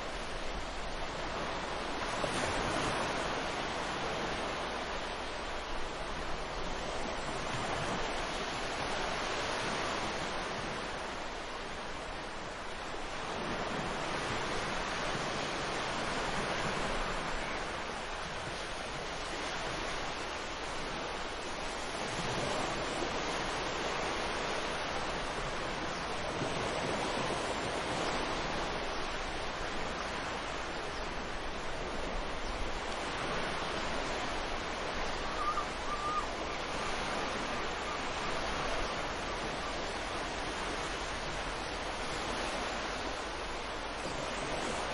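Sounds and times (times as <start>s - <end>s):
waves breaking: 0.0s - 44.9s.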